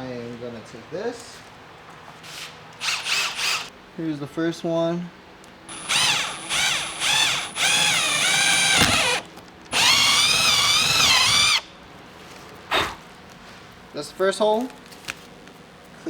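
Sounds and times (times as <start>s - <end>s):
power drill whining: 2.8s - 3.7s, 5.7s - 11.6s.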